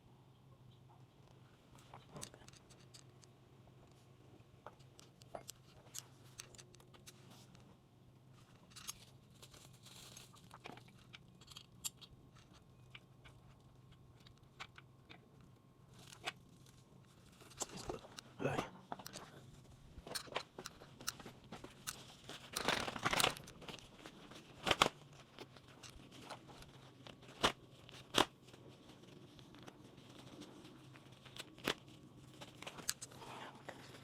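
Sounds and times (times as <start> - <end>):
low steady hum: 0.0 - 34.0
crinkly tearing: 8.5 - 11.2, 19.0 - 34.0.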